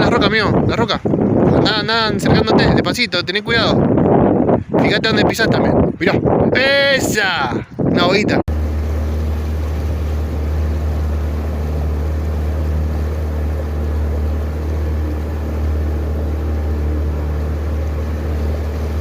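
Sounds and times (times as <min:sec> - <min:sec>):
outboard motor running: 0:08.5 - 0:19.0.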